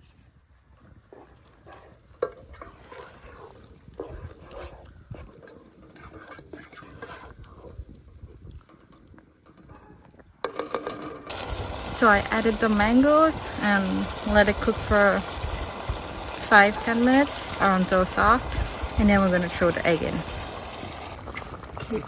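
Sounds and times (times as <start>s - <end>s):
faint sizzle: 11.3s - 22.0s.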